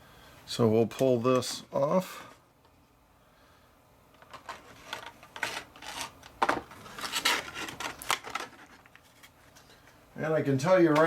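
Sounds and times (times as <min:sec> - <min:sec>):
packaging rubbing and scraping: 0:04.3 - 0:09.3.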